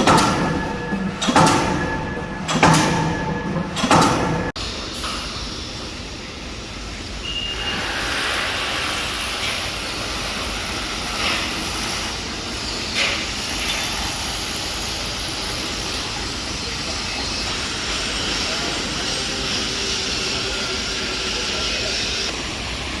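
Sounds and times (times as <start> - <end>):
knocks: 0.0 - 4.6
machinery noise: 0.0 - 23.0.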